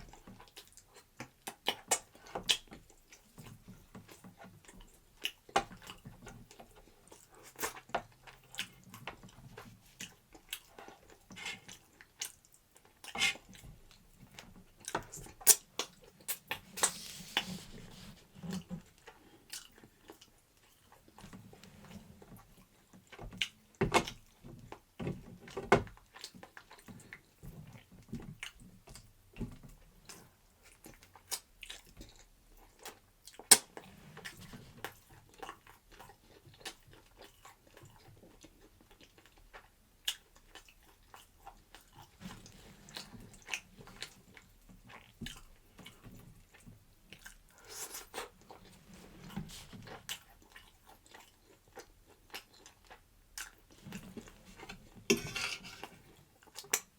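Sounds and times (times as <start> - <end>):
person chewing food: 0.0 - 56.9.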